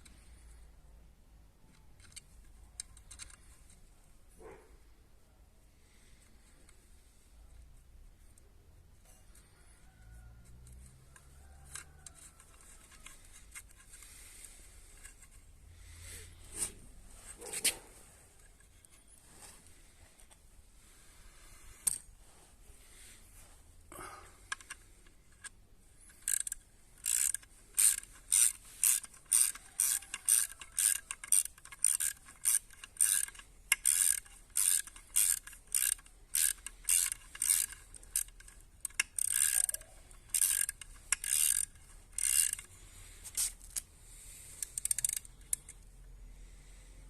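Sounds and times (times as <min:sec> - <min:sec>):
ratchet wrench clicking: 0:01.7 - 0:03.7, 0:10.4 - 0:15.4, 0:24.5 - 0:45.8.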